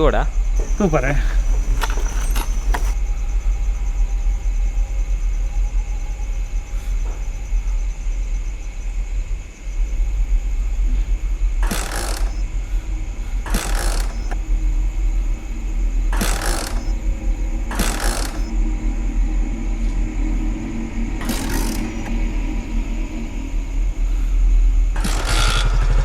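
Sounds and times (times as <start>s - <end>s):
motorbike engine cranking: 0.6s - 3.0s, 11.6s - 12.4s, 13.5s - 14.4s, 16.1s - 18.5s, 21.2s - 22.2s
low rumble: 16.8s - 26.0s.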